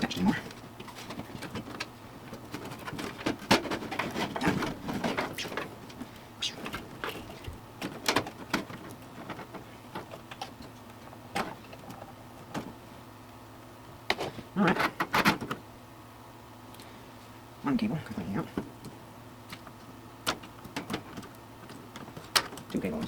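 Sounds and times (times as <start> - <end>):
hands handling computer parts: 0.0 - 12.8.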